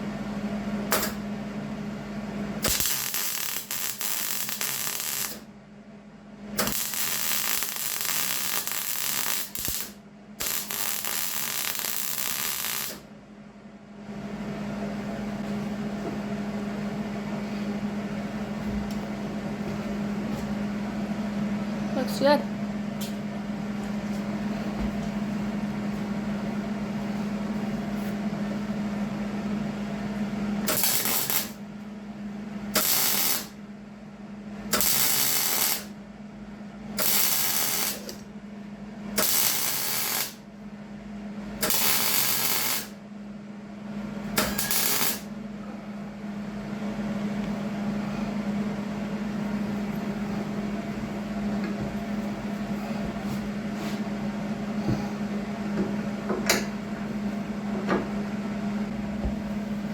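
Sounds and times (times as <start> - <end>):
steady low hum: 0.0 - 59.9
welding arc crackle: 2.6 - 5.4, 6.6 - 13.0, 30.7 - 31.6, 32.8 - 33.6, 34.7 - 35.9, 37.0 - 38.2, 39.2 - 40.4, 41.6 - 43.0, 44.4 - 45.3.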